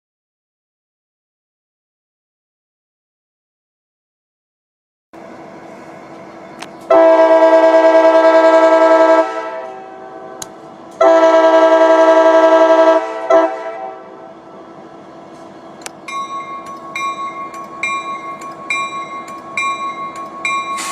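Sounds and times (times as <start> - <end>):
locomotive horn blasts: 6.9 - 14.2.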